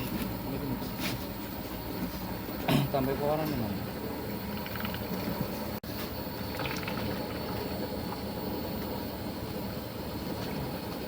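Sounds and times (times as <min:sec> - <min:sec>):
mixing machine running: 0:06.3 - 0:11.0.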